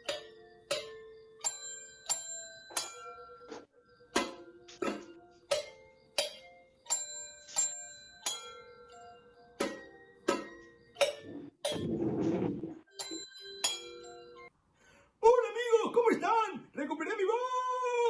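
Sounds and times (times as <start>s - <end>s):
bell-like struck household objects: 0.0s - 12.0s, 12.9s - 14.5s.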